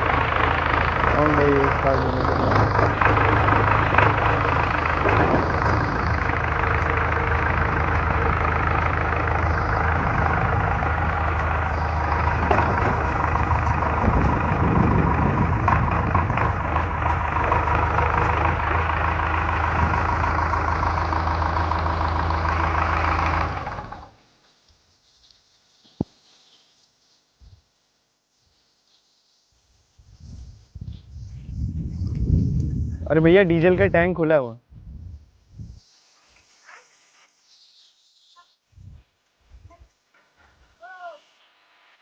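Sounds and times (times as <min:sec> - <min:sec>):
diesel engine running: 0:00.0 - 0:24.2.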